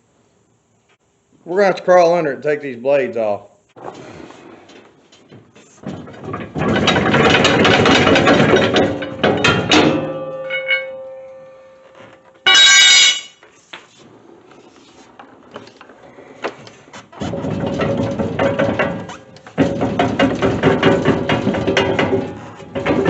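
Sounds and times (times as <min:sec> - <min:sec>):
metallic ringing: 0:08.6 - 0:13.4.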